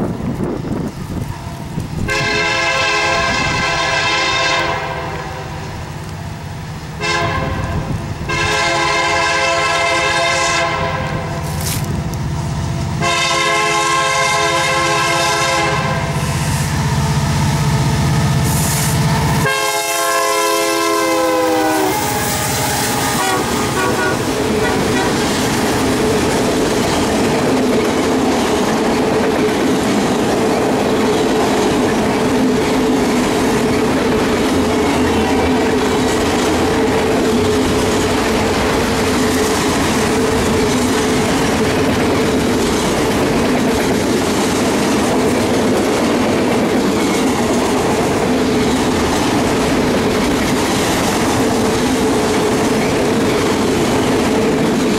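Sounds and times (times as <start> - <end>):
train wheels rumbling on rails: 0.0 - 54.9
locomotive air horn blasts: 2.1 - 5.5, 7.0 - 11.5, 13.0 - 16.4, 18.5 - 25.4.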